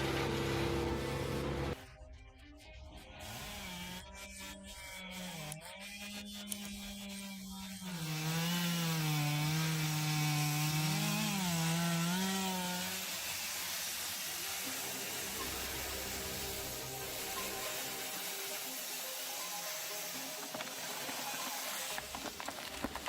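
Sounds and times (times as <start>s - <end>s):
wood-processing machine engine: 0.0s - 1.8s, 8.1s - 23.0s
saw rasping through timber: 3.2s - 18.8s.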